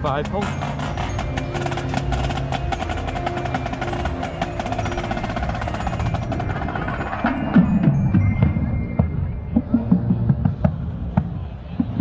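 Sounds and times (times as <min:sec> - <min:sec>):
held horn notes: 0:00.0 - 0:07.9
marching band drumline: 0:00.0 - 0:12.0.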